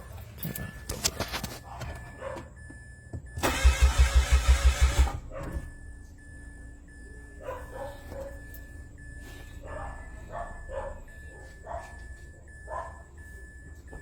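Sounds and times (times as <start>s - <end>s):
dog barking: 1.6s - 2.6s, 5.2s - 5.7s, 7.4s - 8.5s, 9.6s - 13.1s.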